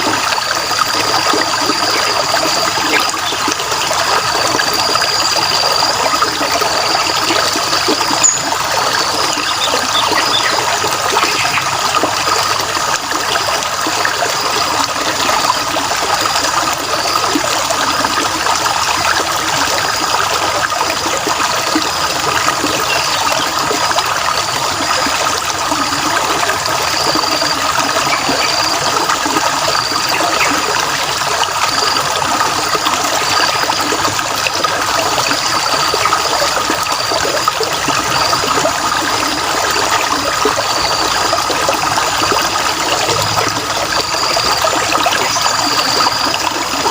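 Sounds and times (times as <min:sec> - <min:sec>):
water trickling: 0:00.0 - 0:46.9
high-pitched chirping: 0:08.0 - 0:11.7.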